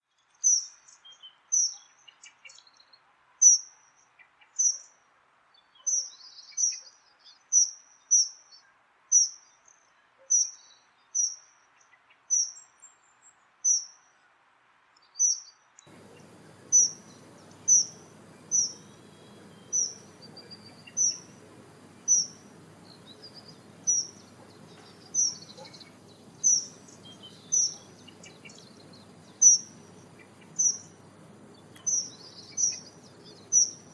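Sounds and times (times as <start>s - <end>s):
faint low background noise: 0.0s - 33.9s
bird giving high thin call: 15.9s - 33.9s.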